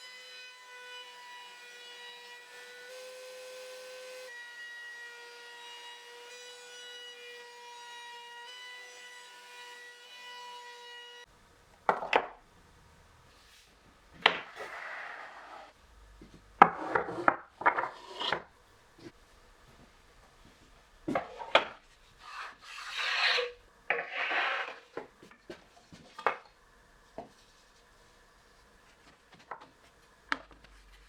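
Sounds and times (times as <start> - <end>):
wood rubbing and scraping: 13.2 - 26.4.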